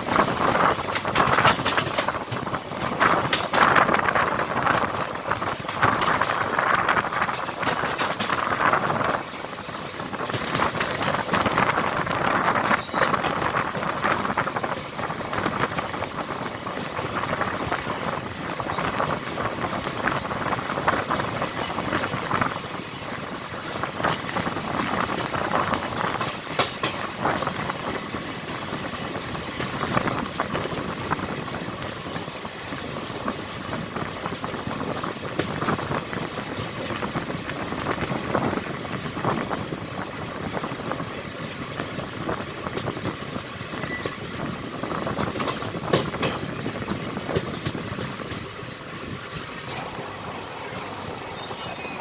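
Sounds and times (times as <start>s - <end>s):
train rumbling past: 0.0s - 52.0s
train wheels clanking: 0.0s - 52.0s.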